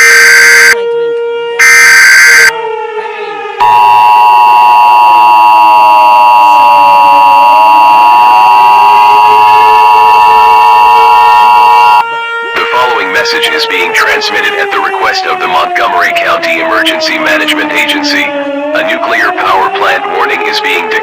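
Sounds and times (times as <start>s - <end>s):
faint gliding siren-like tone: 0.0s - 20.8s
steady attention tone: 3.6s - 12.0s.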